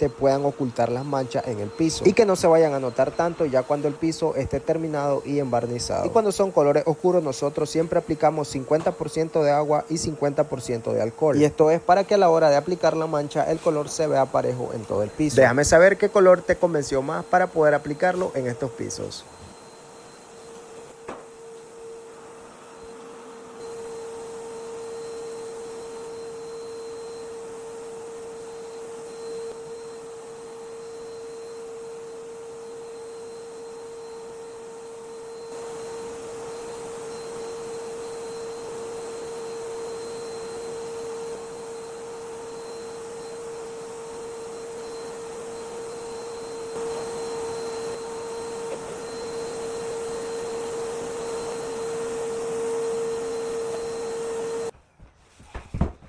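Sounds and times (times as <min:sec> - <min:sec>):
machine hum with whining tone: 0:00.0 - 0:56.0.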